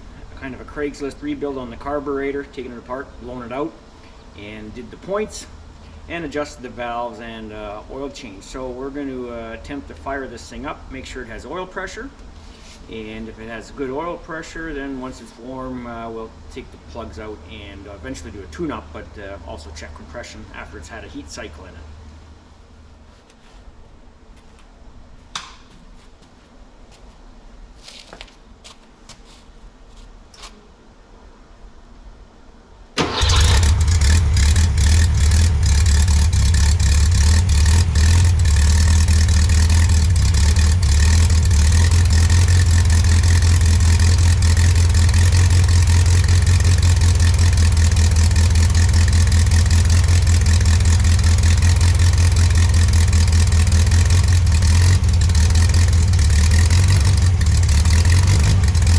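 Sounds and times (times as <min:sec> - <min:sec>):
car engine starting and running: 0:33.0 - 0:58.9.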